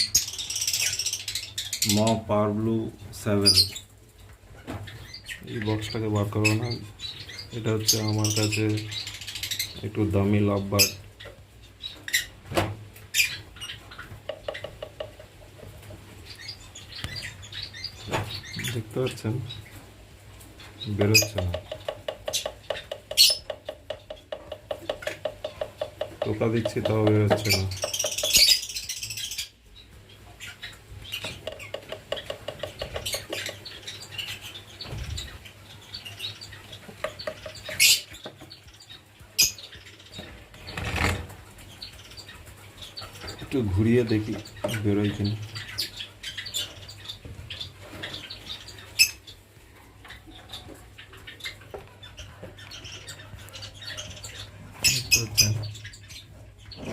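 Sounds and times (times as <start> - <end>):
lovebirds chirping and squeaking: 0.0 - 56.9
knocks on wooden nest box: 14.3 - 15.2, 21.0 - 28.4, 31.3 - 33.6.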